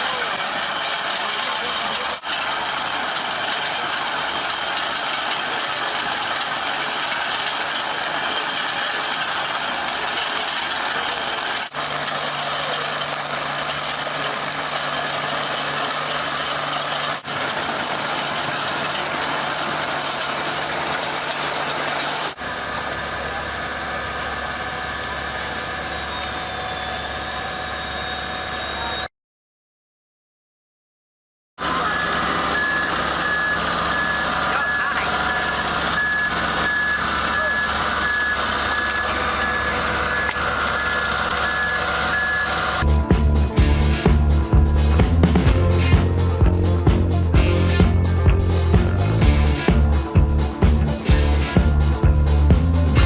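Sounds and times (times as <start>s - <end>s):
heavy machinery engines running: 0.0s - 29.1s, 31.6s - 53.0s
steady tones: 31.8s - 53.0s.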